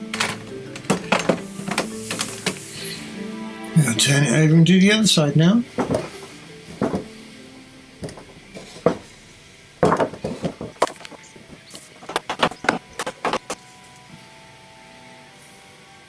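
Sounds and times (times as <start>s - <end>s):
wooden knocks and thuds: 0.1s - 2.6s, 5.7s - 7.2s, 8.0s - 9.2s, 9.8s - 13.6s.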